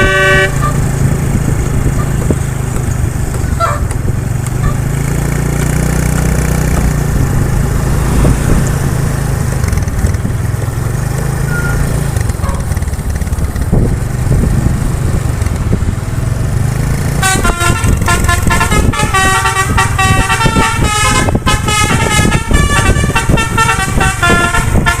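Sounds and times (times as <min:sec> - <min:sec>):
musical horn melody: 0:00.0 - 0:01.0, 0:17.2 - 0:25.0
bus engine droning: 0:00.0 - 0:25.0.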